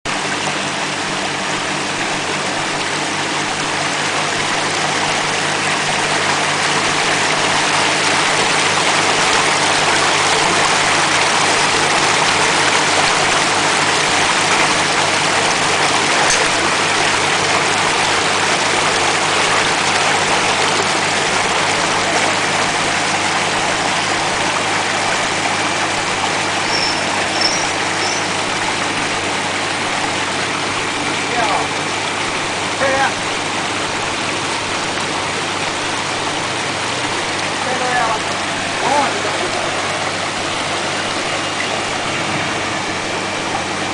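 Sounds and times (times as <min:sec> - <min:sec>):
churning water rushing: 0:00.1 - 0:43.9.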